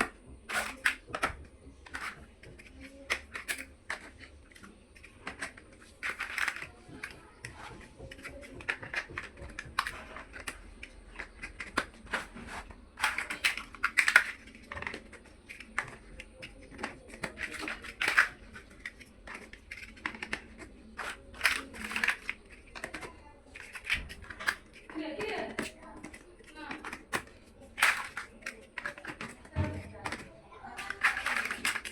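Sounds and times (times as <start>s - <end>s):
plastic building blocks clicking: 0.0s - 31.9s.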